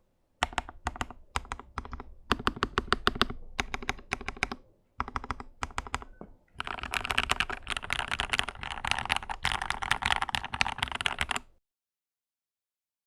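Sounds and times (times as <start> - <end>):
mechanical keyboard typing: 0.4 - 11.5.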